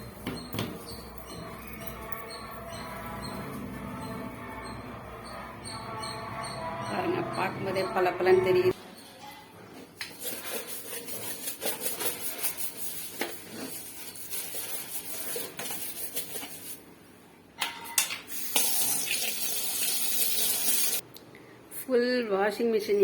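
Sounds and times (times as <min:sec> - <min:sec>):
knocks and clatter: 0:00.2 - 0:02.6
water rushing from a tap: 0:18.4 - 0:21.0.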